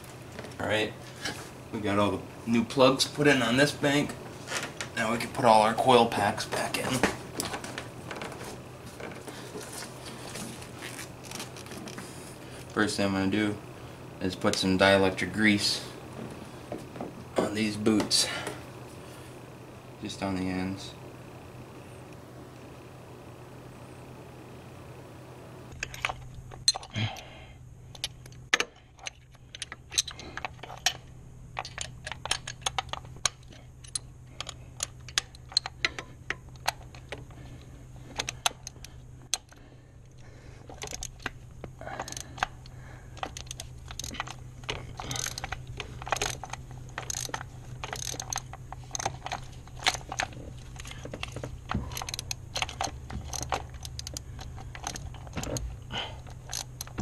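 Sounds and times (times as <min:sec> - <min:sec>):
steady low hum: 0:00.0 - 0:57.0
clinks of small parts and tools: 0:25.8 - 0:27.2, 0:27.9 - 0:37.3, 0:38.1 - 0:57.0.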